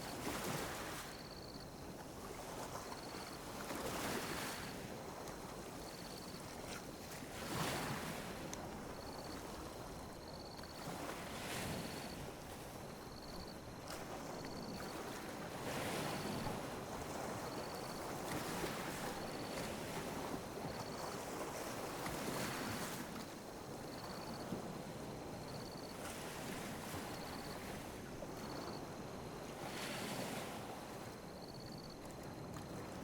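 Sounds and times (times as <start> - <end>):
ocean waves lapping on beach: 0.0 - 33.0.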